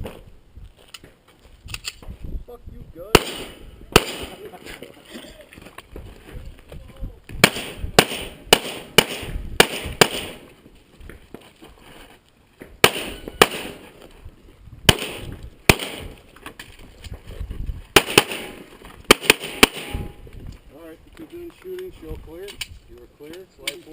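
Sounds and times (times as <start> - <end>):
pistol firing rapid shots: 3.2 - 4.4, 7.4 - 10.4, 12.8 - 13.8, 14.9 - 16.1, 18.0 - 20.0.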